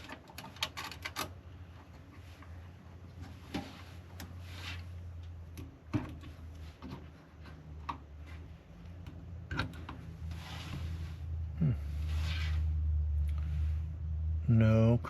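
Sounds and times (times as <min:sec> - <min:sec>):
clicks and knocks of computer parts: 0:00.0 - 0:01.4, 0:05.5 - 0:08.1
steady low hum: 0:00.0 - 0:15.0.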